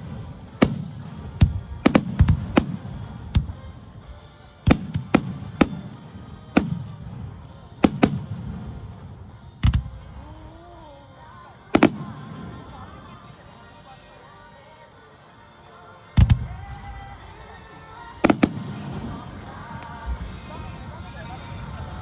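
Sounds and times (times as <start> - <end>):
fireworks bangs with echo: 0.0 - 3.8, 4.6 - 10.1, 11.7 - 12.9, 18.2 - 22.0
faint music: 0.0 - 22.0.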